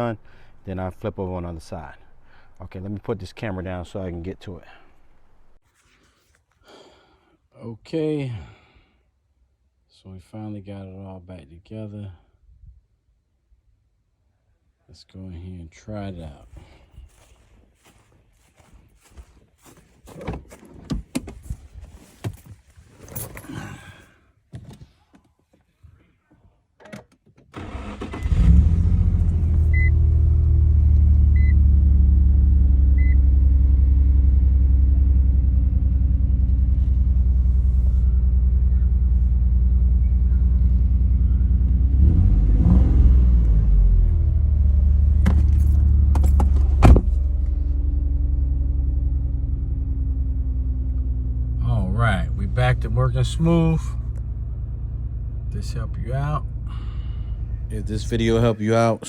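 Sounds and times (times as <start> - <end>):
car engine starting and idling: 0.0 - 5.6, 27.5 - 58.9
keys jingling: 21.4 - 23.7.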